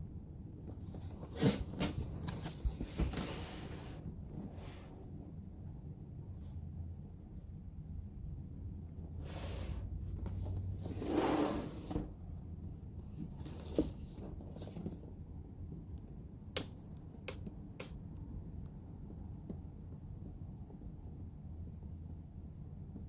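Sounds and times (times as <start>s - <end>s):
rustling and scraping: 0.7s - 5.1s, 9.2s - 12.2s, 13.0s - 15.2s.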